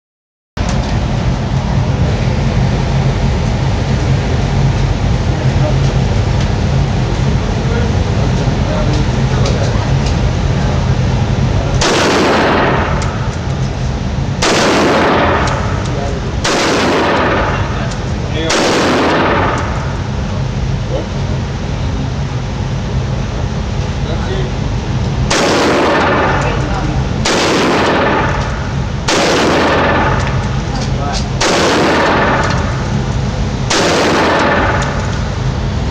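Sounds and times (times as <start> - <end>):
low rumble: 0.6 - 35.9
assault rifle shots echoing: 11.8 - 13.4, 14.4 - 17.9, 18.5 - 20.1, 25.3 - 30.6, 31.4 - 33.0, 33.7 - 35.2.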